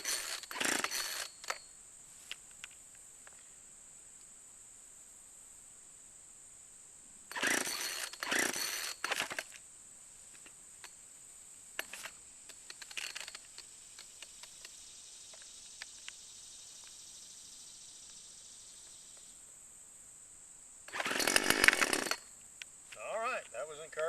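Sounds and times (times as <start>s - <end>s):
chainsaw starter cord yanks: 0.0s - 1.6s, 7.3s - 9.6s, 11.8s - 13.6s, 20.9s - 22.2s
small clicks and handling noises: 11.8s - 14.8s.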